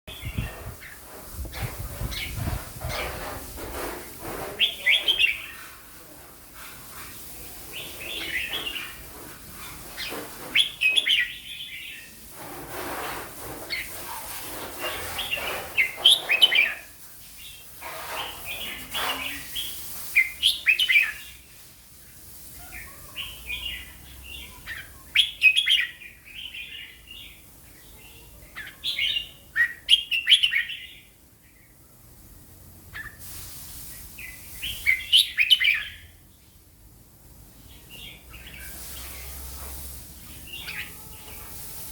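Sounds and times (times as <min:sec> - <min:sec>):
bulbul singing: 0:40.2 - 0:41.7.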